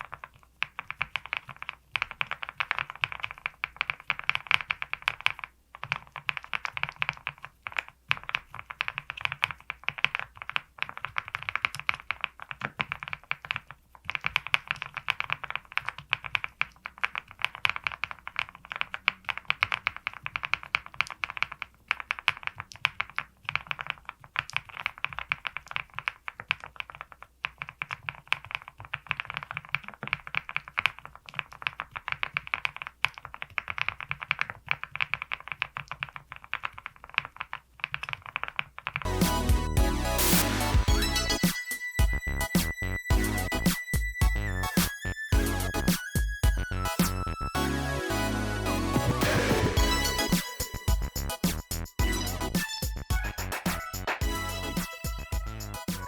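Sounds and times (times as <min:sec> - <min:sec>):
fast keyboard typing: 0:00.0 - 0:39.7, 0:48.9 - 0:56.0.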